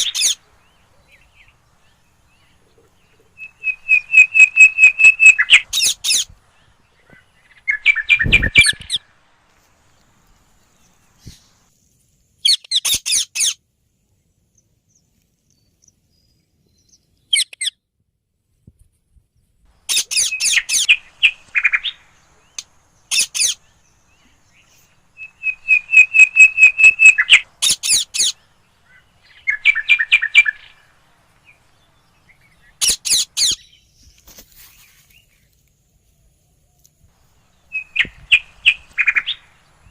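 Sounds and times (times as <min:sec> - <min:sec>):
parakeets screeching: 0:00.0 - 0:00.4, 0:19.9 - 0:23.6, 0:25.5 - 0:28.4, 0:32.8 - 0:33.6.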